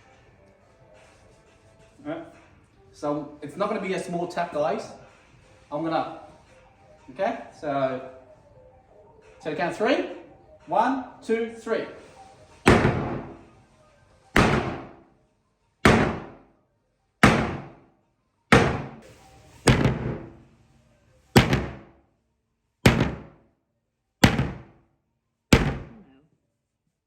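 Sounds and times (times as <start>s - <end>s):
sledgehammer striking metal panel: 12.7s - 13.4s, 14.4s - 15.0s, 15.9s - 16.4s, 17.2s - 17.8s, 18.5s - 19.0s, 19.7s - 20.4s, 21.4s - 21.9s, 22.9s - 23.4s, 24.2s - 24.8s, 25.5s - 26.0s.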